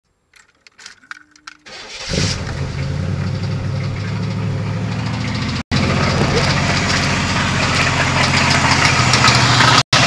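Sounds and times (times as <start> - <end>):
starter cranking: 0.3 - 10.0
engine idling with rod knock: 2.4 - 10.0.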